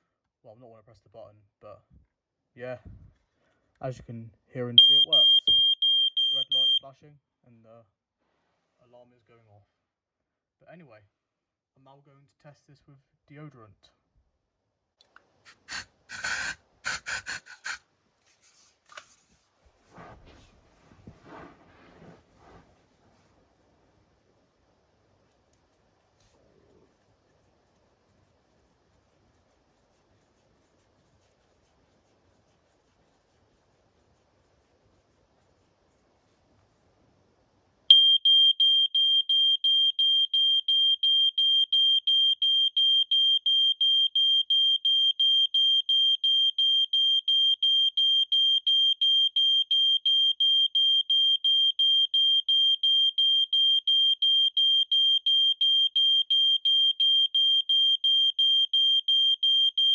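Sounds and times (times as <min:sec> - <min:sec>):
smoke alarm beeping: 0:04.8 - 0:06.8, 0:37.9 - 0:59.9.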